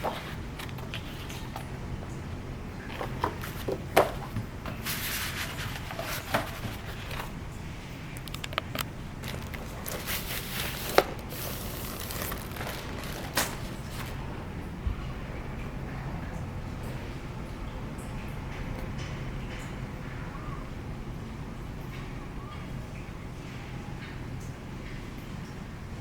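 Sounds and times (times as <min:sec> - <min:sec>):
paper or plastic rustling: 0:00.0 - 0:07.5, 0:08.2 - 0:14.4.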